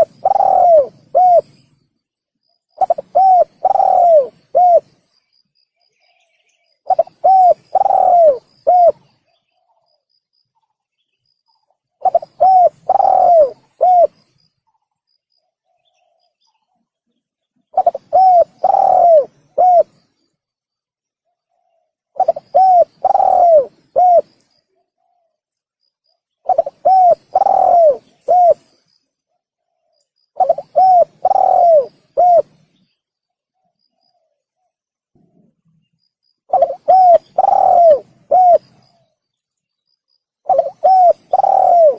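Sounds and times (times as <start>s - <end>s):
dove cooing: 0.0s - 1.6s, 2.8s - 5.0s, 6.8s - 9.9s, 12.0s - 14.3s, 17.7s - 20.0s, 21.5s - 25.4s, 26.4s - 28.8s, 30.4s - 32.7s, 36.5s - 39.2s, 40.4s - 41.9s.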